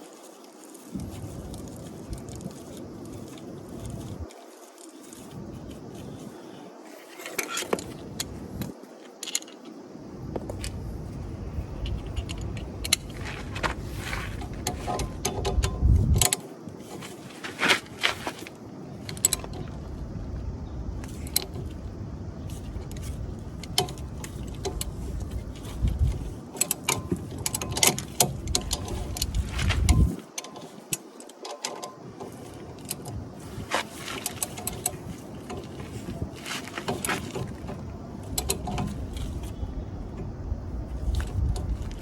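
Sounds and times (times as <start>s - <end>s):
low rumbling handling noise: 9.7s - 42.0s.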